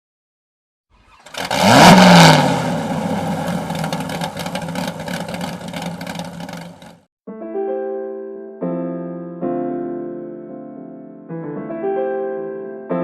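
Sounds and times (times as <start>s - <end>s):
car engine starting and idling: 1.0s - 7.0s.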